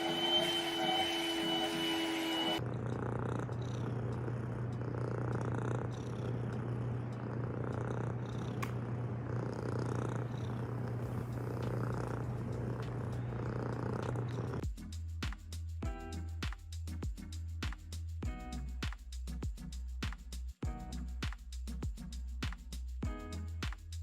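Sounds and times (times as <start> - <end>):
cat purring: 2.6 - 14.7.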